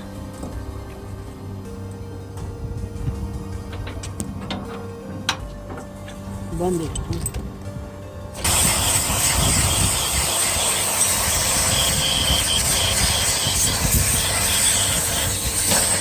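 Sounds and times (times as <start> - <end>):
pressurised gas hissing: 8.4 - 16.0.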